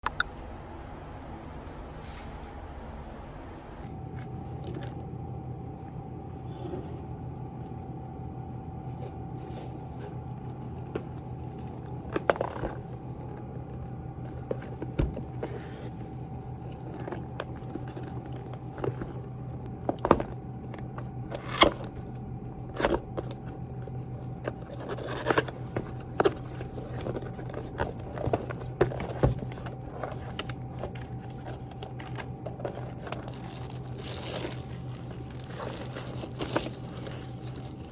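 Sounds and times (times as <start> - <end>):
low electrical hum: 0.0 - 37.9
objects clicking and scraping: 22.7 - 37.9.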